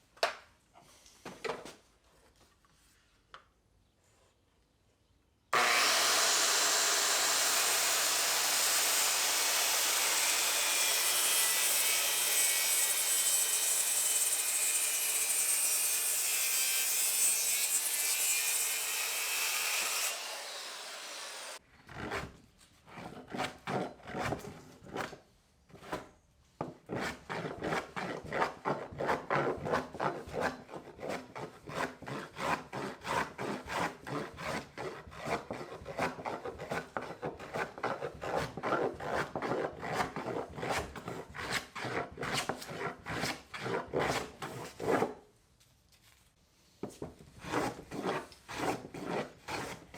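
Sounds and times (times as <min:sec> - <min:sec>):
power tool on wood: 0:05.6 - 0:21.6.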